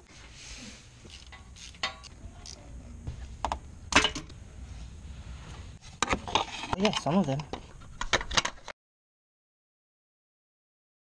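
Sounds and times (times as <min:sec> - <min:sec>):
metal tools clinking: 0:01.0 - 0:02.6.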